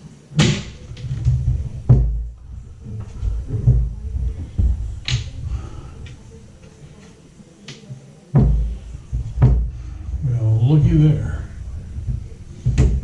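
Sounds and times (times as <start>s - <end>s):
cabinet door clicks and knocks: 0.4s - 2.3s, 8.4s - 9.8s, 12.1s - 13.0s
low thuds of wood: 0.4s - 5.8s, 8.4s - 10.3s, 11.5s - 13.0s.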